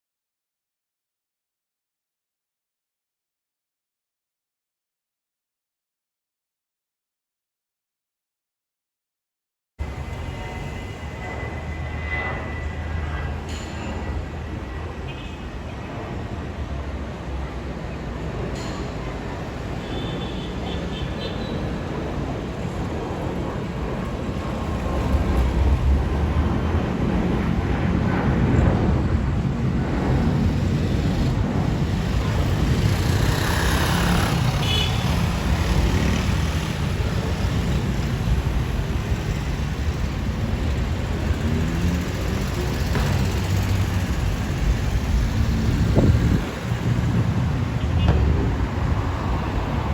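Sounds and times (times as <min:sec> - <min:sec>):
airliner cabin engine rumble: 0:20.6 - 0:33.0.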